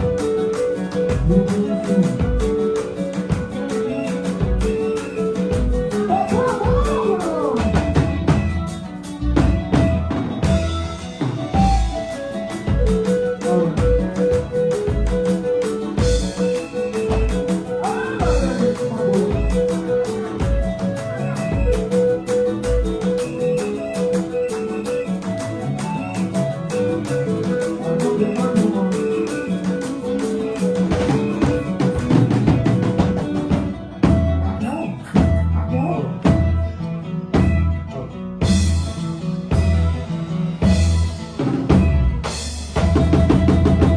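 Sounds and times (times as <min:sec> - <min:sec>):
bass drum beat: 0:01.1 - 0:02.6, 0:05.5 - 0:15.3, 0:17.1 - 0:19.8, 0:30.9 - 0:34.6, 0:36.3 - 0:36.7, 0:37.4 - 0:37.8, 0:38.4 - 0:40.0, 0:40.6 - 0:43.9
repeating melodic line: 0:10.4 - 0:32.2.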